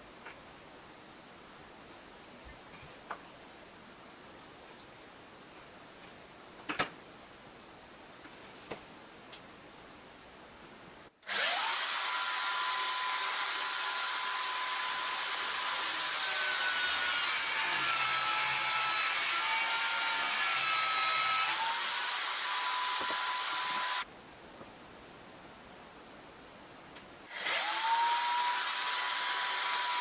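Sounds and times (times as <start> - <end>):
electric drill whining: 11.3 - 24.0, 27.3 - 30.0.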